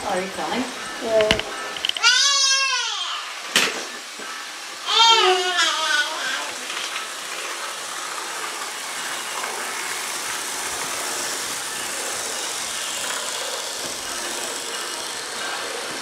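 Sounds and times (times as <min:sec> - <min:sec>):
model train running: 0:00.0 - 0:16.0.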